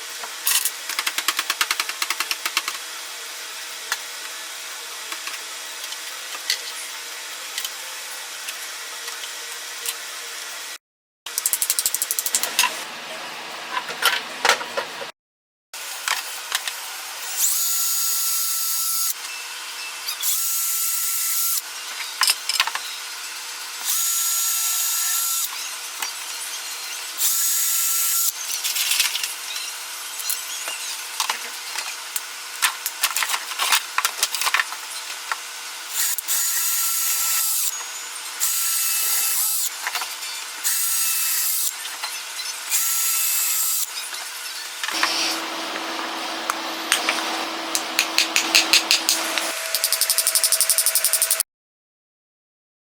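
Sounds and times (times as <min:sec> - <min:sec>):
drill bit boring into wood: 0:35.9 - 0:37.8, 0:42.7 - 0:44.1
drill press running: 0:44.9 - 0:51.4.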